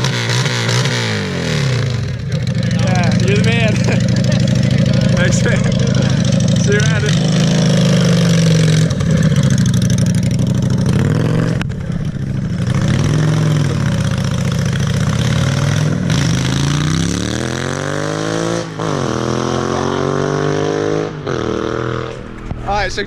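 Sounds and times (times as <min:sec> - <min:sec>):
vehicle engine accelerating: 0:00.0 - 0:23.0.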